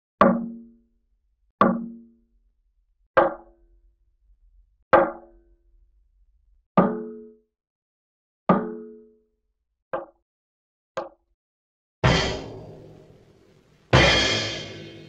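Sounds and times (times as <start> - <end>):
cartoon percussive hit: 12.0 - 13.2, 13.9 - 15.0.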